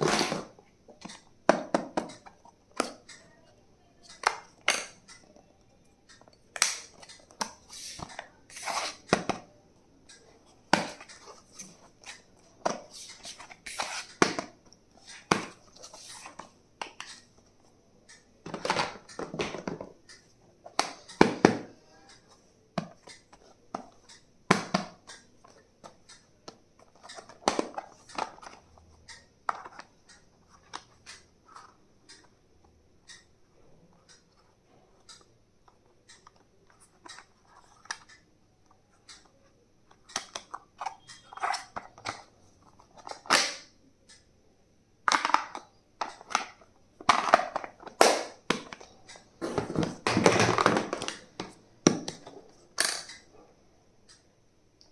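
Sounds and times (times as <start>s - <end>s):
sharp clicks and taps: 32.0s - 32.3s.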